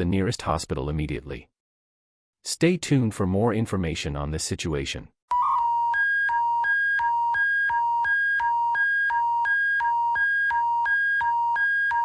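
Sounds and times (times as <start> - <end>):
two-tone electronic alert signal: 5.3 - 12.0.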